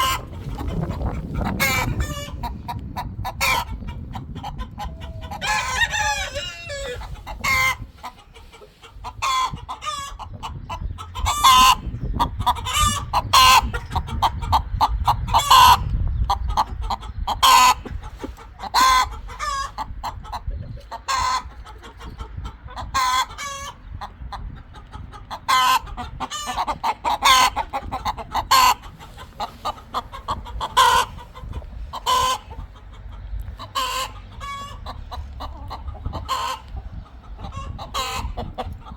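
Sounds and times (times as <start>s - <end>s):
chickens clucking: 0.0s - 38.9s
rooster crowing: 5.3s - 7.0s.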